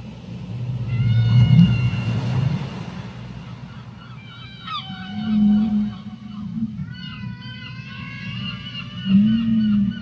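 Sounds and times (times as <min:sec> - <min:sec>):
whale call underwater: 0:00.8 - 0:02.9, 0:03.5 - 0:10.0.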